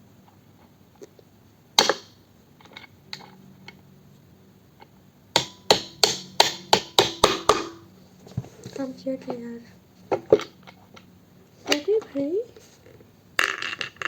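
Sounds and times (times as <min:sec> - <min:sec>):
hard knocks on bike part: 0:01.8 - 0:02.2, 0:05.4 - 0:07.9.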